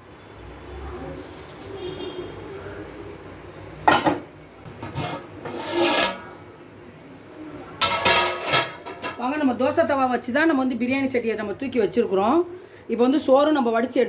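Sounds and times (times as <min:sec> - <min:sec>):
metal cookware clanking: 0:03.9 - 0:06.4, 0:07.8 - 0:09.3
metal pot scraping: 0:04.7 - 0:06.4, 0:07.8 - 0:09.2.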